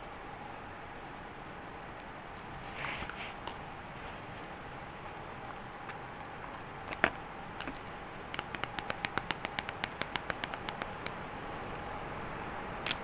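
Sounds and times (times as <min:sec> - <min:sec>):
faint steady hum: 0:00.0 - 0:13.0
small sharp clicks: 0:06.9 - 0:11.2.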